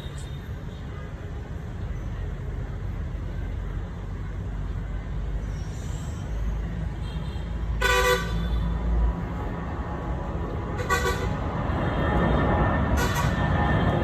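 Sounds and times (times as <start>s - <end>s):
vehicle horn toot: 7.1s - 8.7s, 10.8s - 11.4s.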